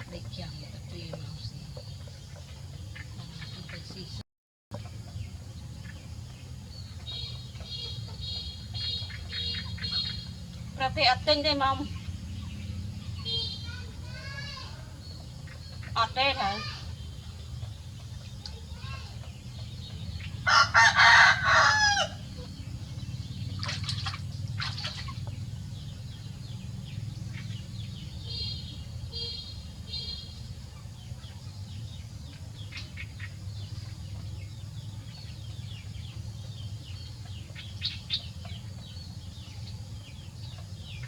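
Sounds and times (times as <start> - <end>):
bird calls and chirps: 0.0 - 41.0
steady low hum: 0.0 - 41.0
rooster crowing: 20.4 - 22.3.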